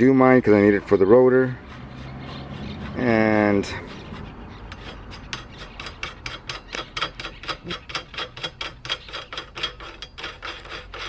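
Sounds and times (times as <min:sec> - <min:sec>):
ratchet clicking: 0:03.9 - 0:11.0.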